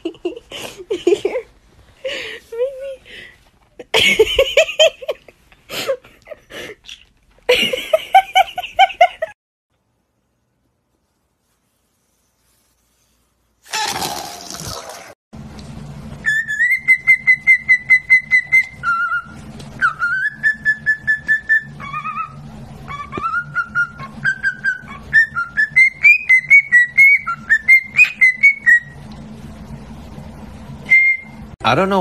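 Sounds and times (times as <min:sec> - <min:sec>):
parrot whistling a tune: 0:16.2 - 0:29.0, 0:30.8 - 0:31.5.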